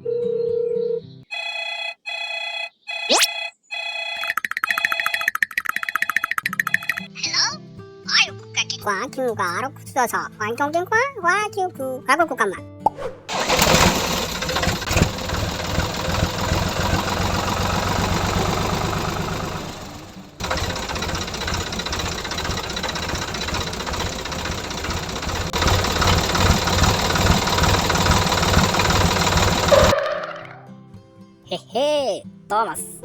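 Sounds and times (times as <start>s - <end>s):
tractor engine chugging: 13.3s - 30.0s.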